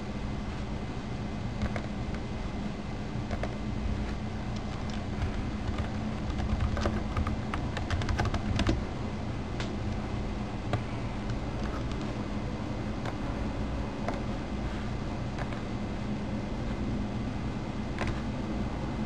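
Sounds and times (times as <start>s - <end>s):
steady low hum: 0.0s - 19.0s
typing on computer keyboard: 1.6s - 1.9s, 4.6s - 8.8s.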